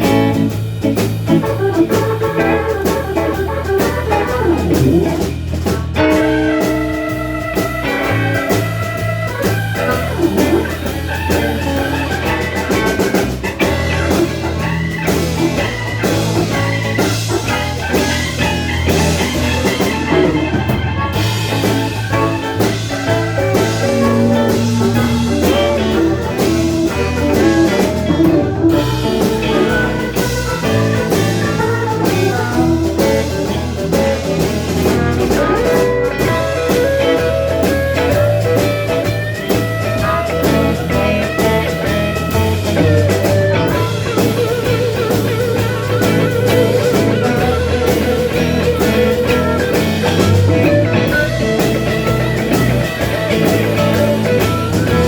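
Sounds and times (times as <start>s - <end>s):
blues band playing: 0.0s - 55.0s
drums: 0.0s - 55.0s
guitar: 0.0s - 55.0s.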